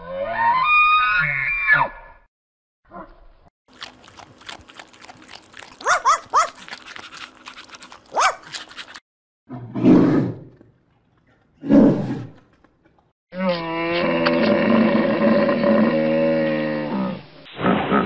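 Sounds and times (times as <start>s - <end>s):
high yelping barks: 5.6s - 7.0s, 8.0s - 8.9s.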